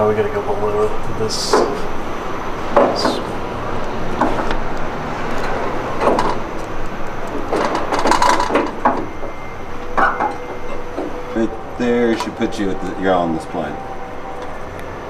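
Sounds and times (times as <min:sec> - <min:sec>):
workshop background noise: 0:00.0 - 0:15.0
metal clanks and scraping: 0:00.6 - 0:14.7
short metal knocks: 0:00.8 - 0:12.9.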